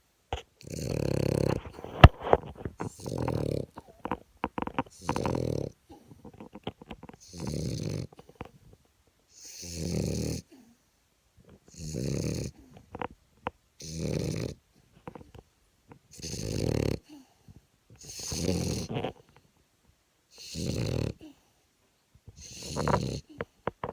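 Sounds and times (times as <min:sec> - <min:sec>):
dog snoring: 0:00.4 - 0:08.5, 0:09.3 - 0:10.6, 0:11.7 - 0:13.1, 0:13.8 - 0:15.3, 0:16.1 - 0:17.2, 0:17.9 - 0:19.4, 0:20.3 - 0:21.4, 0:22.3 - 0:23.9.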